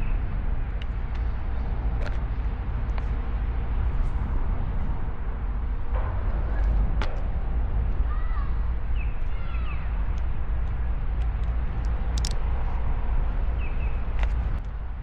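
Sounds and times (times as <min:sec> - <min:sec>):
steady low rumble: 0:00.0 - 0:15.0
light clicks: 0:11.2 - 0:12.7.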